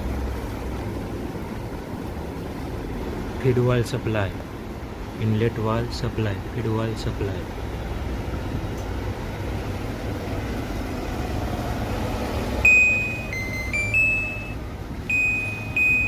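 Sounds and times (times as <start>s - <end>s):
steady low hum: 0.0s - 16.0s
buzzer beeping a tune: 12.6s - 16.0s.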